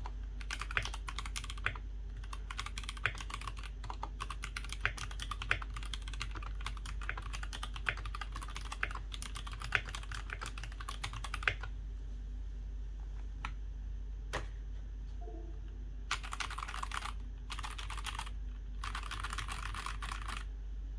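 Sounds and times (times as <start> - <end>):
typing on mechanical keyboard: 0.0 - 11.7, 16.1 - 20.5.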